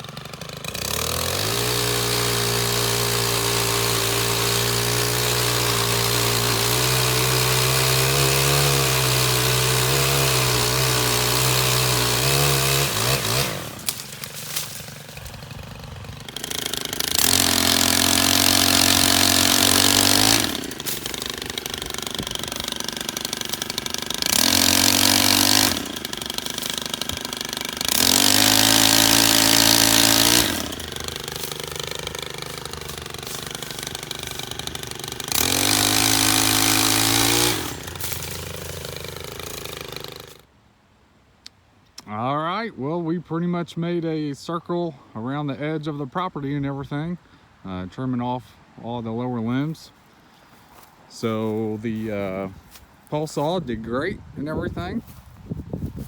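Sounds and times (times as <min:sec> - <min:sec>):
pole saw engine revving: 0:00.0 - 0:40.5.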